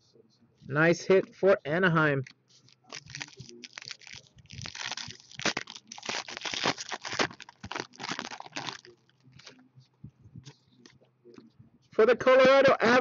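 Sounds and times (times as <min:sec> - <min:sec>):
plastic crinkling and rustling: 0:02.7 - 0:09.7.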